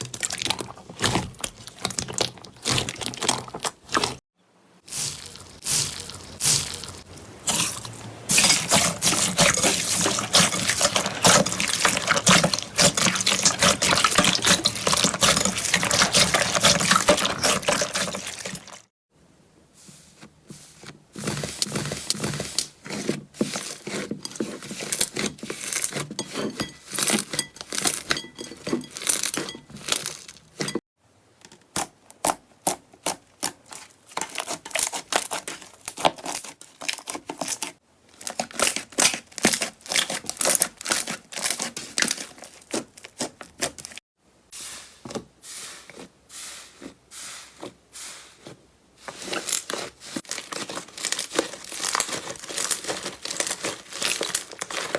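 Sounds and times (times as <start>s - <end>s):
slime squished by hand: 49.2s - 54.9s.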